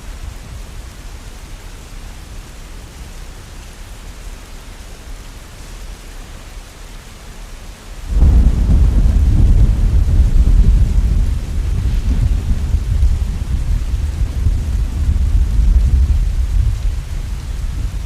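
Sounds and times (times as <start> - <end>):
rain hiss: 0.0 - 18.0
thunder rumble: 8.1 - 18.0.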